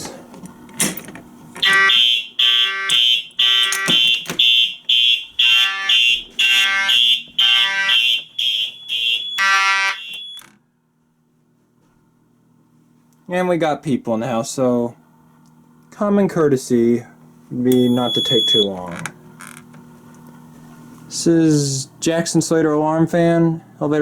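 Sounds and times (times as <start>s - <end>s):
faint hum: 0.0s - 24.0s
fire alarm pull station click: 1.6s - 10.5s, 17.7s - 18.8s
pulsing fire alarm horns: 1.6s - 10.5s, 17.7s - 18.8s.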